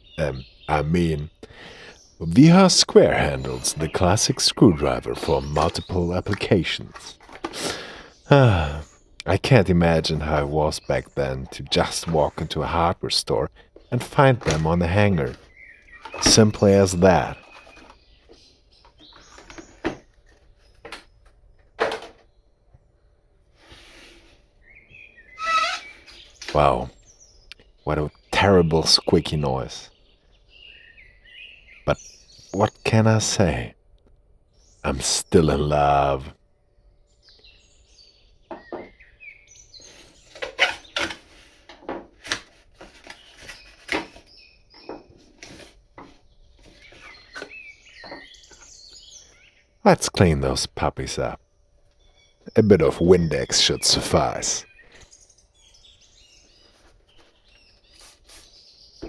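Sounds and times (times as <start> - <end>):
birds chirping: 0.0 - 59.0
squeaky sliding noise: 25.4 - 26.2.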